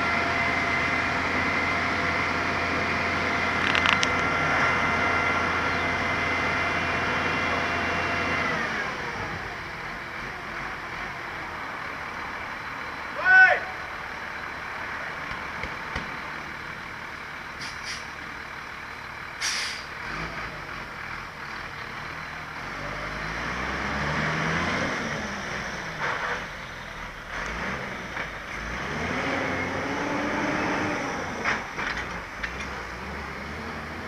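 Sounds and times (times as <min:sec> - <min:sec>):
truck engine revving: 0:00.0 - 0:13.1, 0:13.9 - 0:34.0
air brake hiss: 0:17.6 - 0:18.1, 0:19.4 - 0:19.9.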